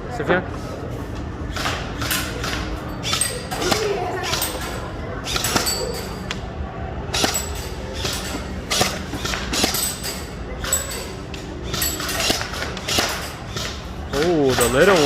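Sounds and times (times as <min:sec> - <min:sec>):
pellets hitting targets: 0:07.1 - 0:11.1.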